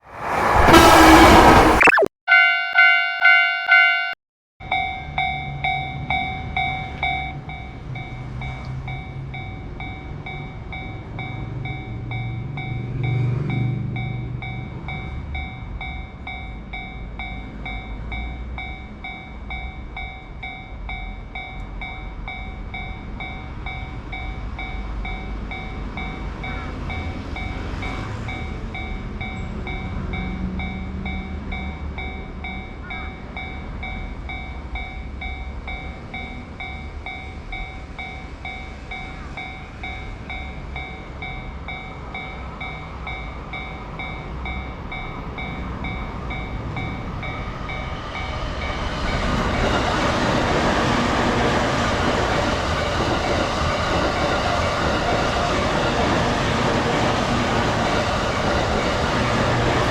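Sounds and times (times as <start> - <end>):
crossing warning bell clanging: 2.3 - 59.9
train rolling rumble: 4.7 - 59.9.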